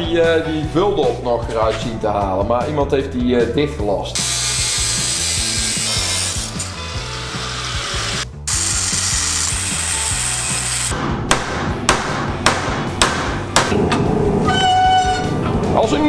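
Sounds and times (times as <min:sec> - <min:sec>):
background music with bass line: 0:00.0 - 0:16.0
power tool grinding on steel: 0:04.2 - 0:10.9
sharp knocks: 0:11.0 - 0:14.1.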